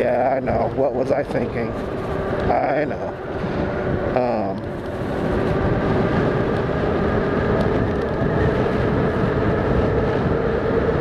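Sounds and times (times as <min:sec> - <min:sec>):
electric bike motor hum: 0:00.0 - 0:11.0
road rumble: 0:00.0 - 0:11.0
wind over microphone: 0:00.0 - 0:11.0.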